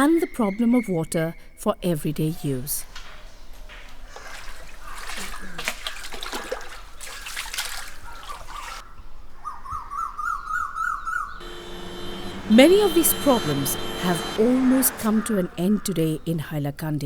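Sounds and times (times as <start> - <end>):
water splashing and trickling: 3.9 - 8.8
rapid squeaking: 11.4 - 16.1.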